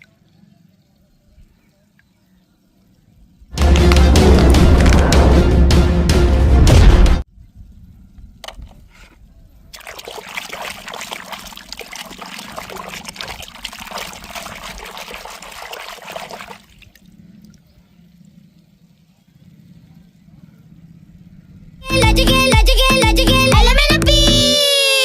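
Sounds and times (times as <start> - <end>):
water running and splashing: 9.7 - 17.6.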